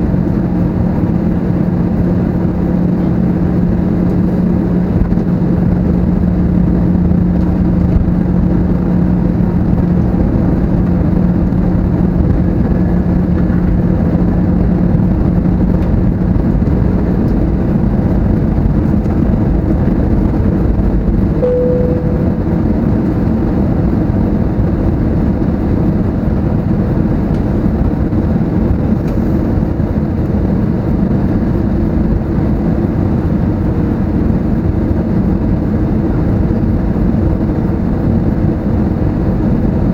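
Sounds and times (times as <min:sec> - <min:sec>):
low steady hum: 0:00.0 - 0:26.0
airflow rush in cabin: 0:00.0 - 0:39.9
jet engine noise: 0:00.0 - 0:39.9
brief higher tone: 0:21.4 - 0:23.4.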